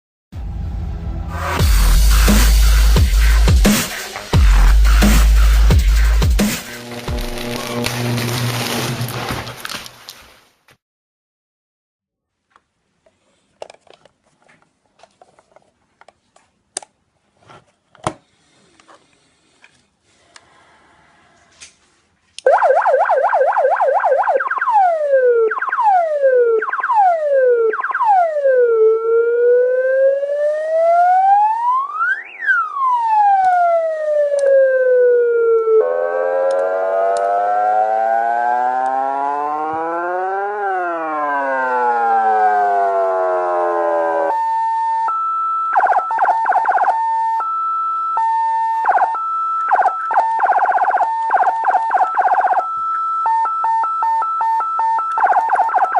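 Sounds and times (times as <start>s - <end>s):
electronic siren wailing: 22.4s - 55.9s.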